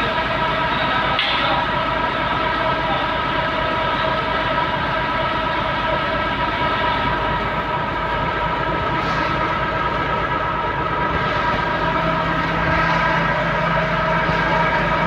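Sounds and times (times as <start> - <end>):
industrial machinery drone: 0.0 - 15.0.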